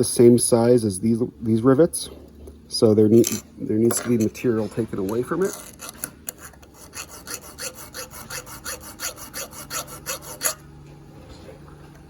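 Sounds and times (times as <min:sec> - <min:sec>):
hand file scraping metal: 0:04.1 - 0:10.6.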